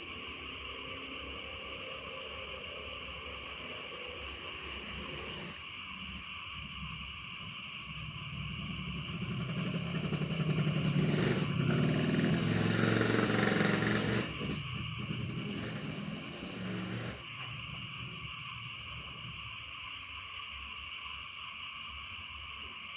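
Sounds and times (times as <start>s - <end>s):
frogs and insects chorus: 0.0s - 22.9s
motorcycle passing: 7.4s - 17.2s.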